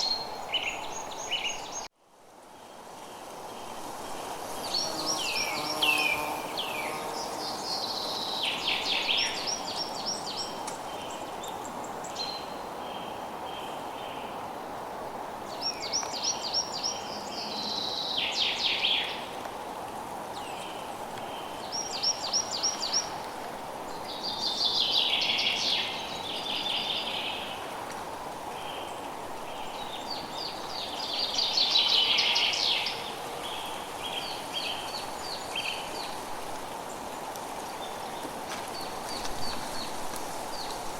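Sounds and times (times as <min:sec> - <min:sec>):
songbird singing: 0:00.0 - 0:01.9, 0:02.6 - 0:14.4, 0:15.5 - 0:19.4, 0:20.3 - 0:23.3, 0:23.9 - 0:27.7, 0:28.5 - 0:36.2
steady background hiss: 0:00.0 - 0:40.9.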